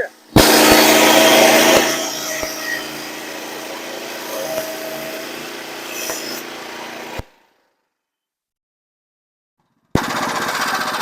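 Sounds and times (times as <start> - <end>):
bandsaw mill engine hum: 0.0 - 7.5, 10.0 - 11.0
saw rasping through log: 0.4 - 7.3.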